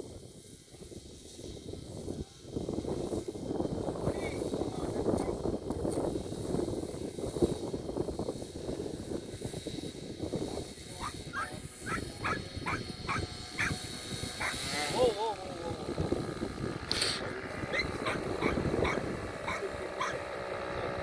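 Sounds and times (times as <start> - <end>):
dog barking: 11.0 - 13.8, 14.4 - 14.6, 17.7 - 20.2.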